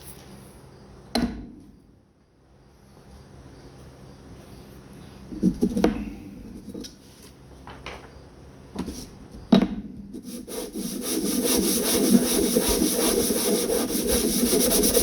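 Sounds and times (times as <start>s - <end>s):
hand sanding strokes on sandpaper: 10.2s - 15.0s.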